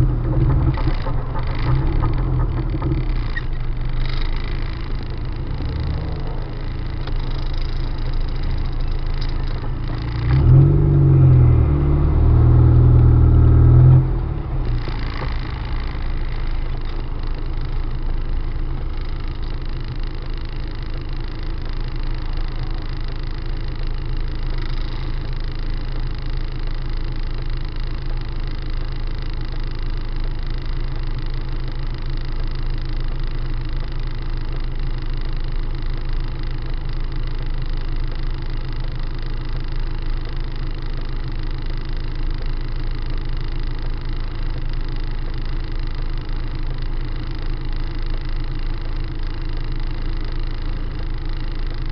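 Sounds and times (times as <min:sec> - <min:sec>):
car driving: 0:00.0 - 0:23.0
low-pitched hum: 0:00.0 - 0:27.5.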